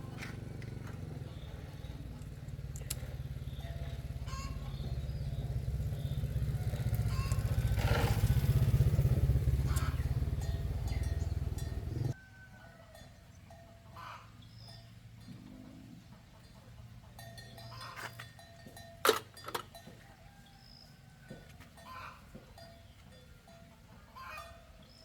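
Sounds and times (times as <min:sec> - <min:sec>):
engine running: 0:00.0 - 0:12.2.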